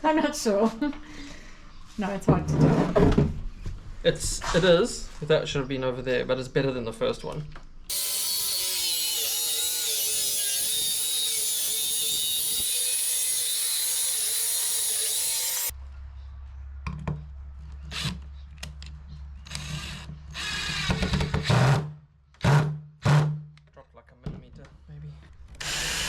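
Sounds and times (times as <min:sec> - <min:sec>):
power drill driving screws: 0:07.9 - 0:15.7, 0:25.6 - 0:26.0.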